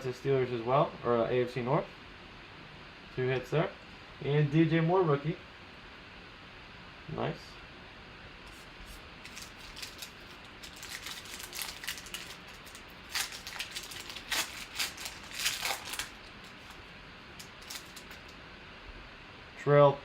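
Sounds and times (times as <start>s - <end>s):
cards rustling: 8.5s - 18.4s
foil wrapper crinkling and tearing: 8.5s - 18.4s.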